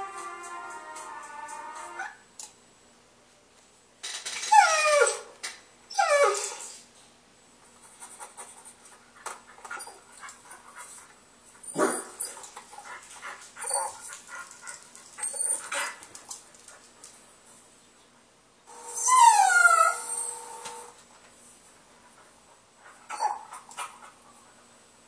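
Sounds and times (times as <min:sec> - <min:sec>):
dog whining and yelping: 0:04.5 - 0:05.3, 0:05.9 - 0:06.8, 0:13.6 - 0:14.2, 0:15.2 - 0:16.0, 0:18.9 - 0:20.4, 0:23.1 - 0:23.7.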